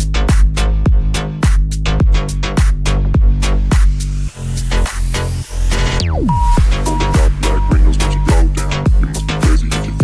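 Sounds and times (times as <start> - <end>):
hip-hop beat with booming bass: 0.0 - 10.0.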